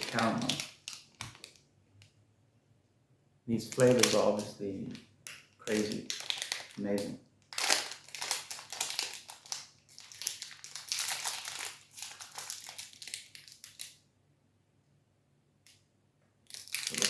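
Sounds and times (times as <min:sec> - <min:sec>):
plastic wrapper crinkling: 0:00.0 - 0:01.7, 0:03.6 - 0:14.0, 0:16.5 - 0:17.0.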